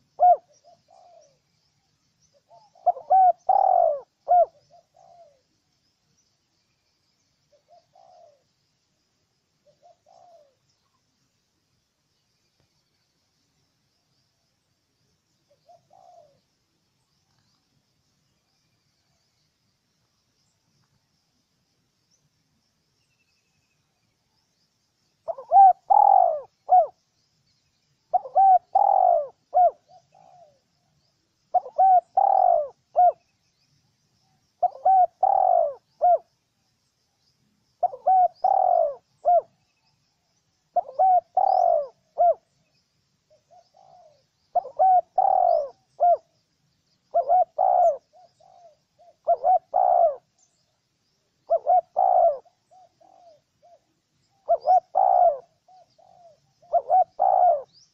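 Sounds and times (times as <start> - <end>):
dove cooing: 0.0 - 1.4, 2.3 - 5.5, 7.5 - 8.5, 9.6 - 10.6, 15.5 - 16.4, 25.2 - 27.0, 28.1 - 30.7, 31.5 - 33.2, 34.6 - 36.3, 37.8 - 39.6, 40.7 - 42.5, 43.3 - 46.3, 47.1 - 50.4, 51.4 - 57.9.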